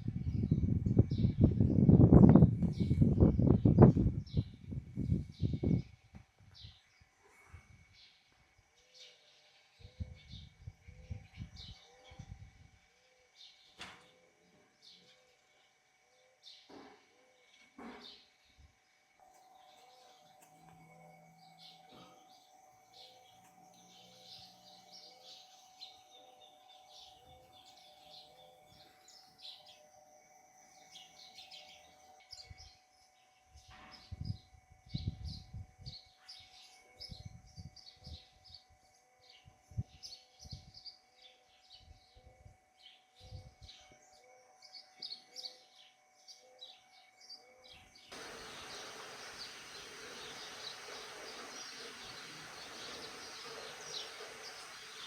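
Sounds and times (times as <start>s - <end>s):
birds chirping and calling: 47.7s - 55.0s
steady hiss: 48.1s - 55.0s.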